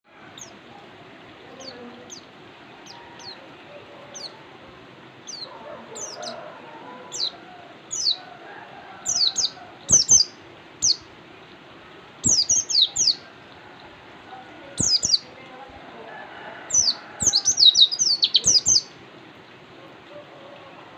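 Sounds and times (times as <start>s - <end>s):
songbird high chirps: 0.3s - 4.5s, 5.2s - 8.3s, 9.0s - 11.6s, 12.2s - 13.9s, 14.6s - 15.6s, 16.7s - 19.0s.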